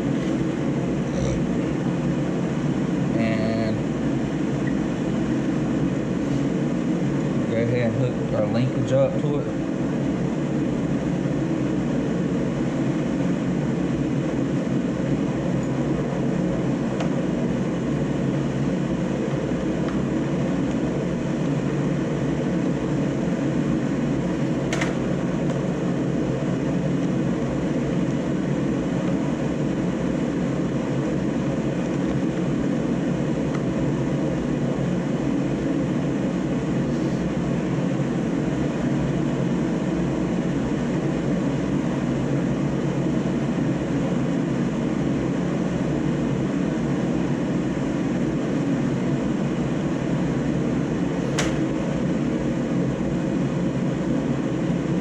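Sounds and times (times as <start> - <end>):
heater rushing hum: 0.0 - 55.0
small click: 51.3 - 51.6.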